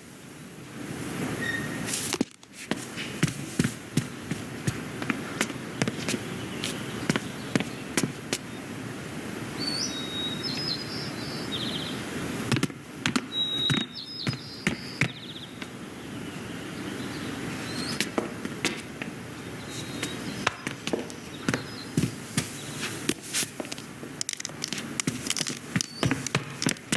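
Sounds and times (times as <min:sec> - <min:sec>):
high bird-like chirps: 0:09.6 - 0:12.0, 0:13.3 - 0:18.0, 0:19.4 - 0:20.6.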